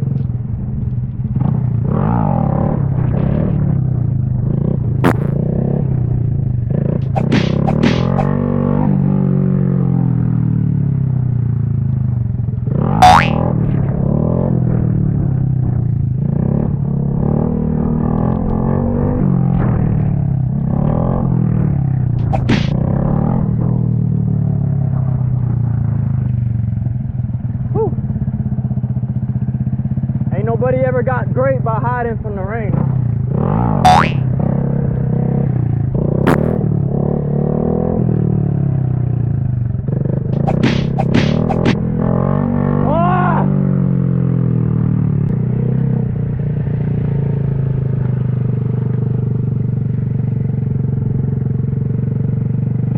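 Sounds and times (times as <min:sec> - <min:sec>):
motorcycle engine revving: 0:01.2 - 0:10.5, 0:12.5 - 0:25.2, 0:32.7 - 0:42.9
sharp click: 0:07.0 - 0:08.3, 0:22.2 - 0:22.8, 0:40.4 - 0:41.8.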